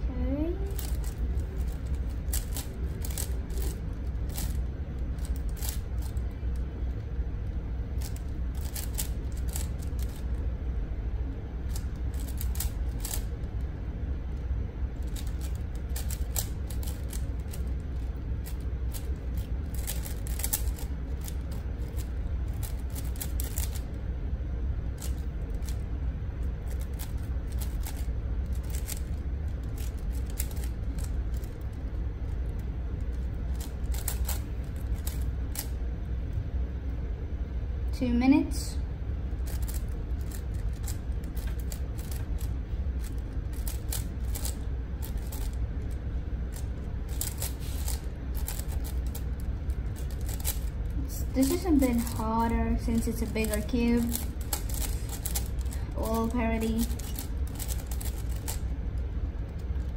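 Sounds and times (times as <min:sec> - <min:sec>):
puzzle cube plastic clicks: 0:05.2 - 0:06.2, 0:18.4 - 0:23.9, 0:29.7 - 0:31.6, 0:56.8 - 0:58.6.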